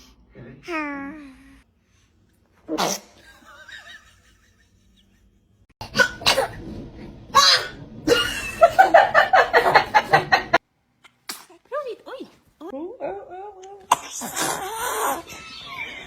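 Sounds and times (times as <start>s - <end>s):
baby sneezing: 2.7s - 3.2s, 7.4s - 7.8s, 11.1s - 11.7s, 13.9s - 15.2s
baby pulsed vocal sounds: 13.1s - 15.4s.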